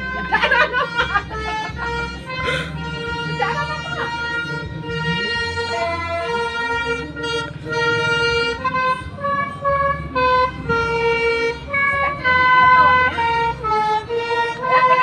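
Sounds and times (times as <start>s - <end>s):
bus engine running: 0.0s - 15.0s
bus multi-tone horn tune: 0.0s - 15.0s.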